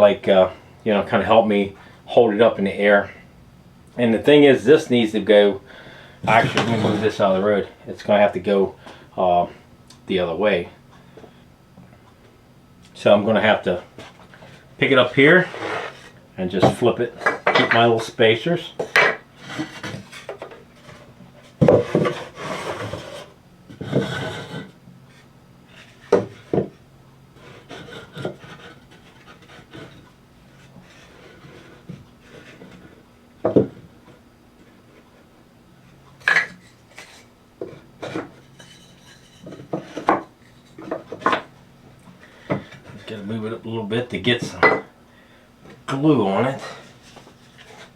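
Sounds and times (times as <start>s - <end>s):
wood sliding and scraping: 6.2s - 7.6s, 13.4s - 18.2s, 18.8s - 26.7s, 27.4s - 35.3s, 35.9s - 41.5s, 45.7s - 47.9s.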